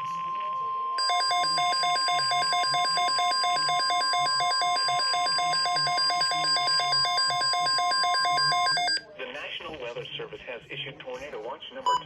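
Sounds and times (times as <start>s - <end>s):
rapid repeating beeps: 1.0s - 9.0s.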